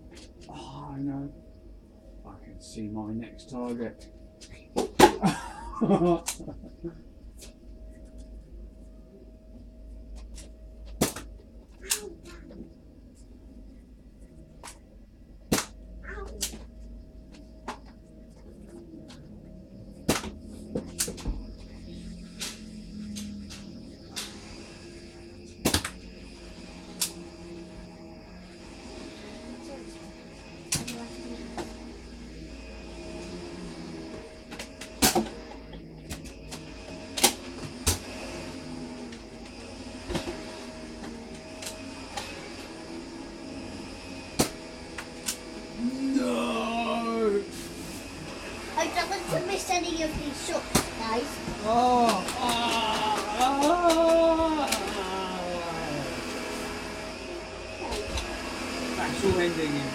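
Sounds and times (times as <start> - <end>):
faint steady hum: 0.0 - 59.9
foam darts striking: 15.5 - 15.8, 20.1 - 20.4, 25.6 - 26.0
toy blasters firing: 25.6 - 26.0.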